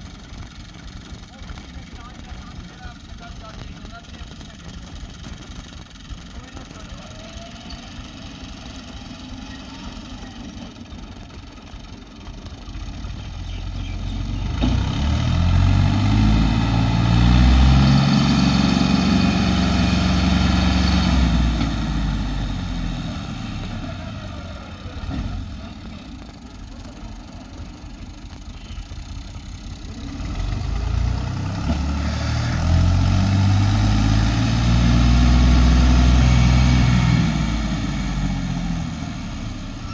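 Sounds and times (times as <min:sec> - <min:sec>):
engine revving: 0:12.8 - 0:26.3, 0:29.8 - 0:39.9.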